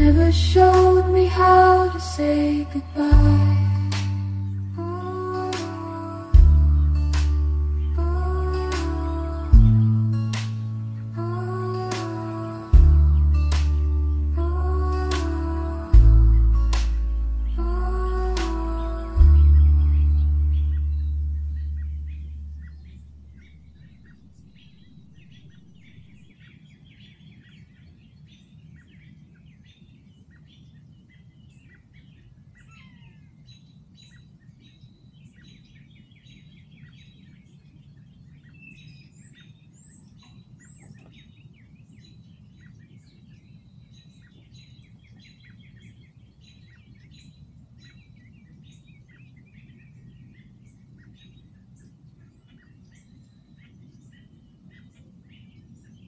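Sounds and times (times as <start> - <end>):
low background hum: 0.0 - 26.3
small birds chirping: 0.0 - 56.0.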